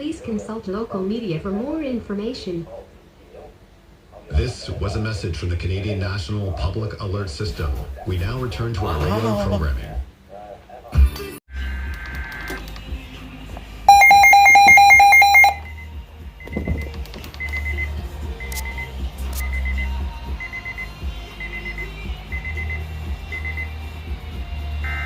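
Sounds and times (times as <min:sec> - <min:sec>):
high beeps: 0:13.9 - 0:16.8
rapidly pulsing electronic beep: 0:13.9 - 0:23.8.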